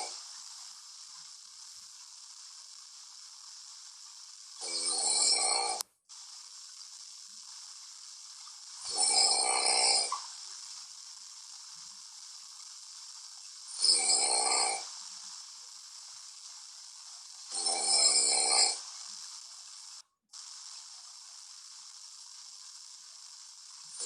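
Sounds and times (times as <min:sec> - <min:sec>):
faint steady hiss: 0:00.0 - 0:24.0
man snoring: 0:04.6 - 0:05.8, 0:08.9 - 0:10.1, 0:13.8 - 0:14.8, 0:17.5 - 0:18.8.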